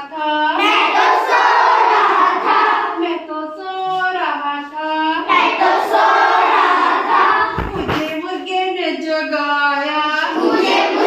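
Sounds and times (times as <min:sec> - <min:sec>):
children singing in chorus: 0:00.6 - 0:03.2, 0:05.2 - 0:07.8, 0:10.2 - 0:11.0.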